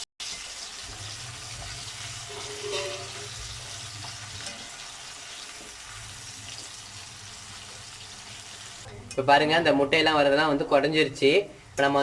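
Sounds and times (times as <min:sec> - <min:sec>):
deep-frying in hot oil: 0:00.0 - 0:08.9.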